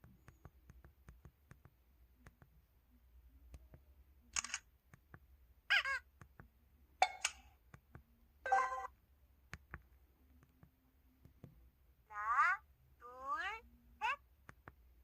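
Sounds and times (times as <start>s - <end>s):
camera shutter tones: 4.4s - 4.6s.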